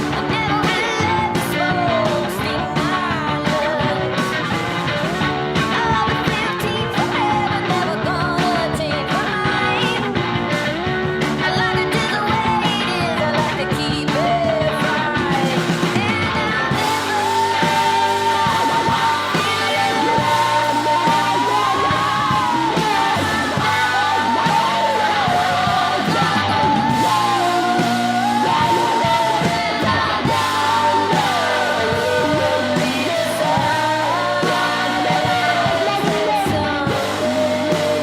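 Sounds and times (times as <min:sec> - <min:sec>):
rock band playing: 0:00.0 - 0:38.0.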